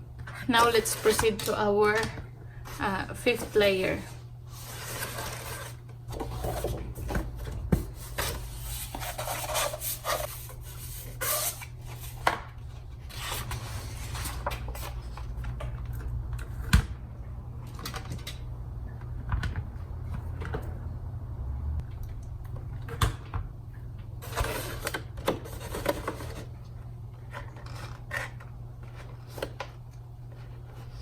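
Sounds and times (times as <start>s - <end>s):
steady low hum: 0.0s - 31.0s
paper rustling and scraping: 2.7s - 15.7s, 24.2s - 26.6s.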